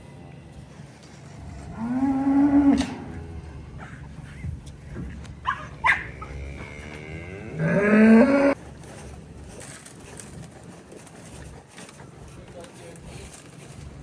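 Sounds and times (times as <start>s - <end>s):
cow mooing: 1.3s - 4.1s, 5.4s - 8.6s.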